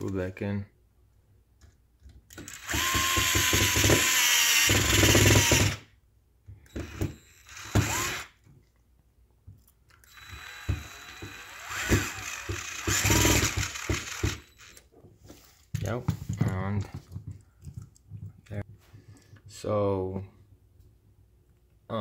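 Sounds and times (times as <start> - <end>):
electric screwdriver motor whining: 2.4 - 5.8, 6.7 - 8.4, 10.0 - 14.8.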